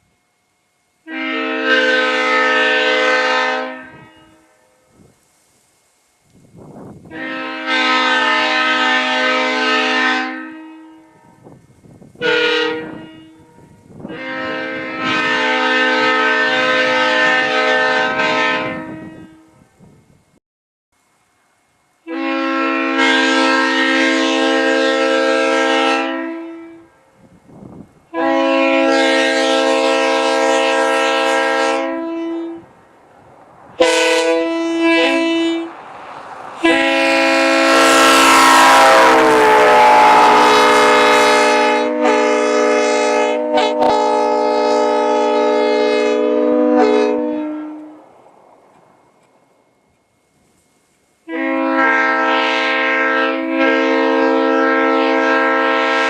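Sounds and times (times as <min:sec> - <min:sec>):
locomotive air horn blasts: 0:01.0 - 0:05.0, 0:07.0 - 0:19.8, 0:22.0 - 0:32.8, 0:33.7 - 0:48.1, 0:51.2 - 0:56.0.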